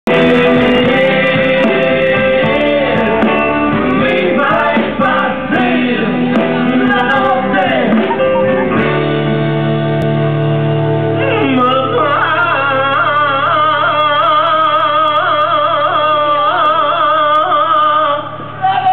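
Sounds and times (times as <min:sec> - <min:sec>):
singing over guitar: 0:00.1 - 0:09.2, 0:11.0 - 0:18.9
wavering voice: 0:08.0 - 0:08.9.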